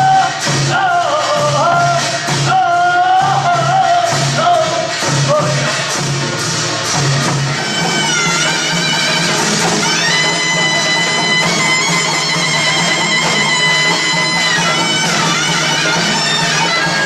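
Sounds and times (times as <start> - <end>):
shawm playing held high note: 6.8 - 17.0.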